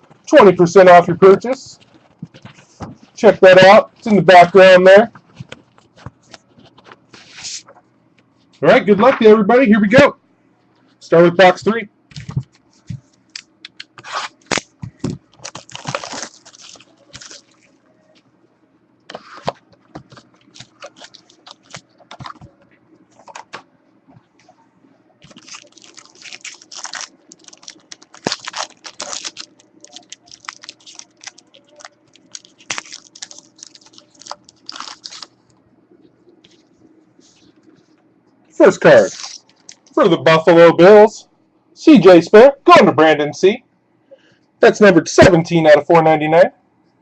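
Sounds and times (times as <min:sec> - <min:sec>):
packaging crinkling and tearing: 0:14.0 - 0:17.8, 0:19.9 - 0:22.5, 0:25.2 - 0:35.4, 0:39.0 - 0:39.9.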